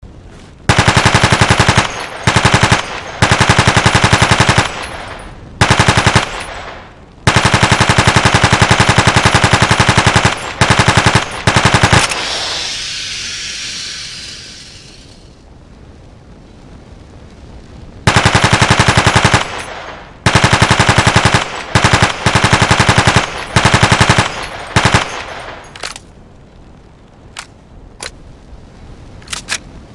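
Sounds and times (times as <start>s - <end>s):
machine gun automatic fire: 0.7s - 12.8s, 18.1s - 26.0s
high hiss: 11.6s - 15.4s.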